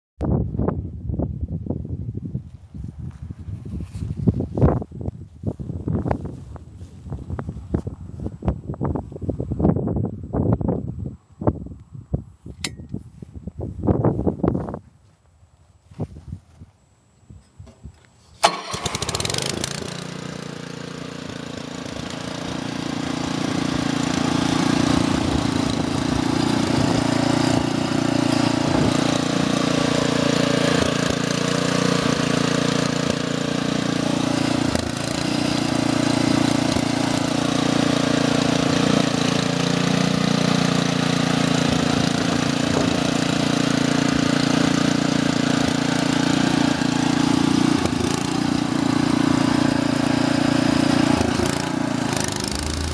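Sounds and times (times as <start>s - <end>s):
small gas engine starting and running: 17.6s - 52.9s.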